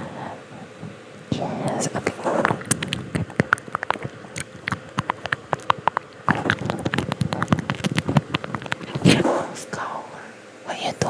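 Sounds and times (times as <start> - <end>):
small clicks and crackles: 1.6 - 9.4.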